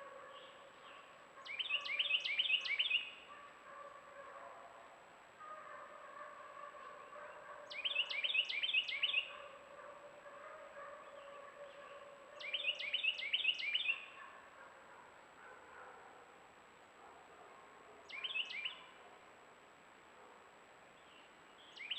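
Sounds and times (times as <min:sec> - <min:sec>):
songbird singing: 0:00.2 - 0:03.3, 0:06.8 - 0:09.7, 0:10.9 - 0:14.2, 0:18.0 - 0:19.0, 0:20.9 - 0:21.9.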